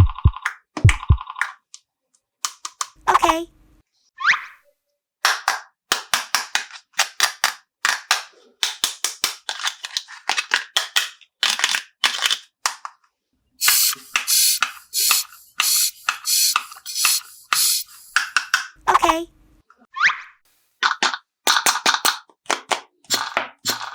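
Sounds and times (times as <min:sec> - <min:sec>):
plastic toy pieces clicking together: 0:02.4 - 0:03.0, 0:05.2 - 0:13.0, 0:13.6 - 0:18.8, 0:20.8 - 0:23.9
plastic packaging rustling: 0:09.4 - 0:12.6.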